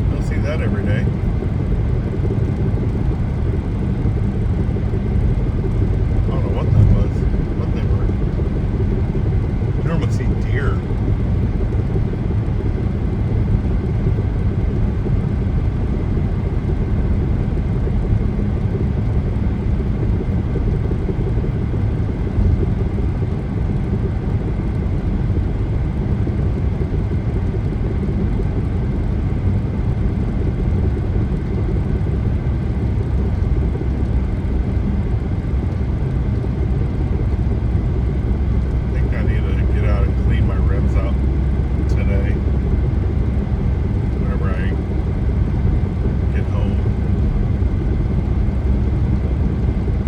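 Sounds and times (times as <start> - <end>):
car road noise inside cabin: 0.0 - 50.0.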